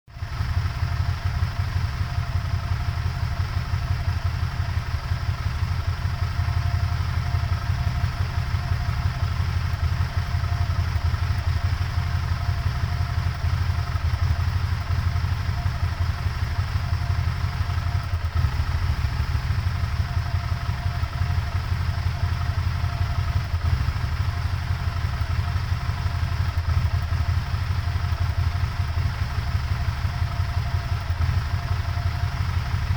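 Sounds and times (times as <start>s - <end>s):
car engine idling roughly: 0.1s - 32.9s.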